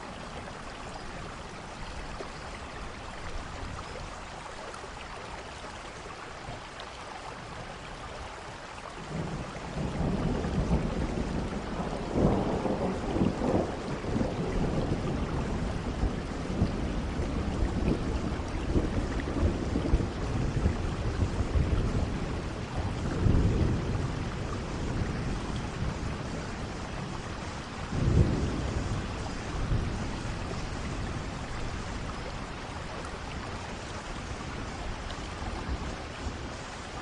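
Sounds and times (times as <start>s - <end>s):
steady rain: 0.0s - 37.0s
low rolling thunder: 9.0s - 37.0s.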